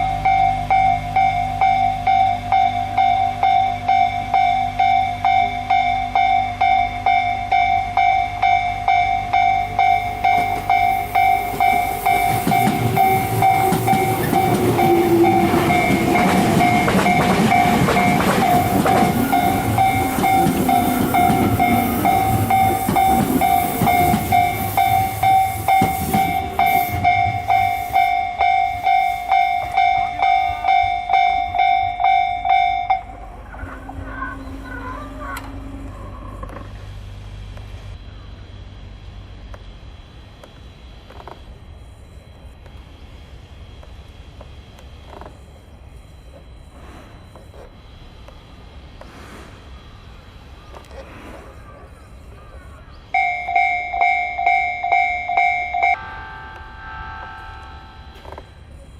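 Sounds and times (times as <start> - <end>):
train wheels clicking over rail joints: 0.0 - 36.9, 39.4 - 41.6, 43.8 - 45.5
level-crossing alarm ringing: 0.0 - 37.1, 40.1 - 49.0, 51.6 - 58.9.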